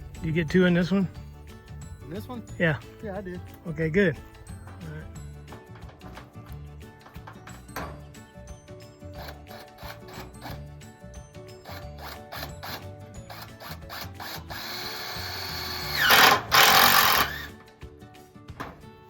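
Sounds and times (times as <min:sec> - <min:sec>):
background music with beat: 0:00.0 - 0:16.7, 0:17.5 - 0:19.0
power drill driving screw: 0:09.2 - 0:10.6, 0:11.6 - 0:17.6.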